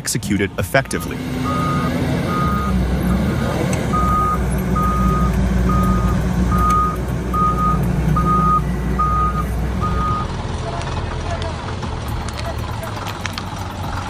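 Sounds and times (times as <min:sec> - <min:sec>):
diesel engine running: 0:00.0 - 0:14.0
reversing alarm beeping: 0:00.8 - 0:10.3.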